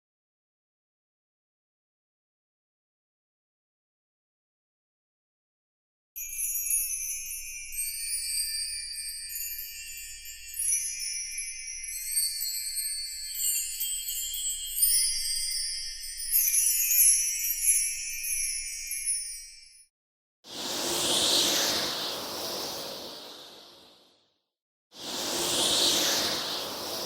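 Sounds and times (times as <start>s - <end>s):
tinkling bell-like chimes: 6.2s - 19.9s.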